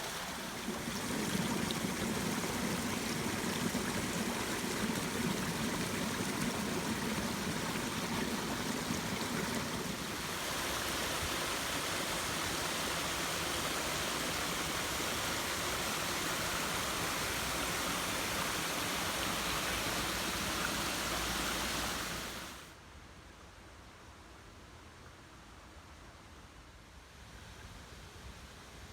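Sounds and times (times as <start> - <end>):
brook flowing: 0.0 - 22.7.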